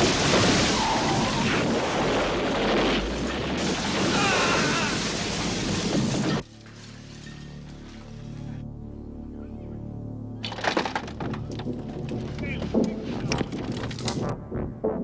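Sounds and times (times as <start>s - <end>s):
car crashing through glass: 0.0s - 7.4s
music: 6.4s - 15.0s.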